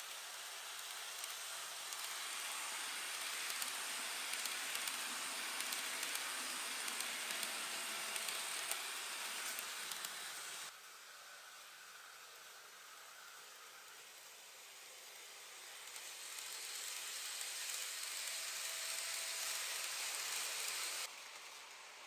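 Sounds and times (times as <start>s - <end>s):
model train whirring on track: 0.0s - 22.0s
small clicks: 8.2s - 10.4s.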